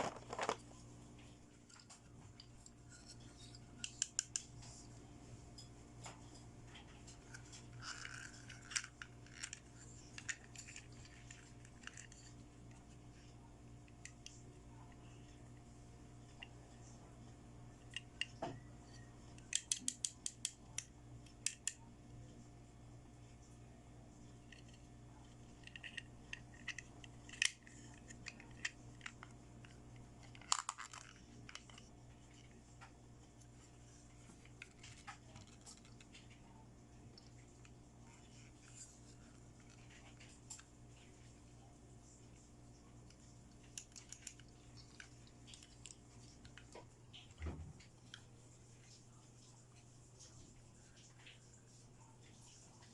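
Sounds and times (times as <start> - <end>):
pieces clattering: 0.0 - 0.6
packaging clicks and rustles: 0.0 - 0.7, 25.7 - 32.4
steady low hum: 0.0 - 52.9
toy pieces clicking and rustling: 7.1 - 12.4, 25.4 - 31.9.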